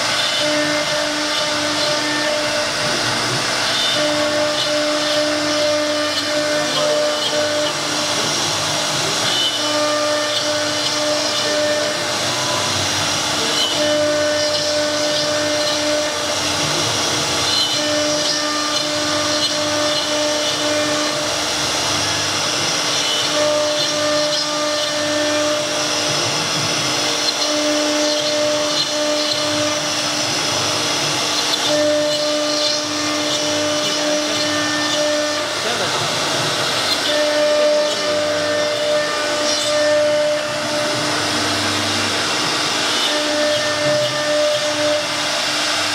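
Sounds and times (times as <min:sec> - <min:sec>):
router spindle cutting board: 0:00.0 - 0:45.9.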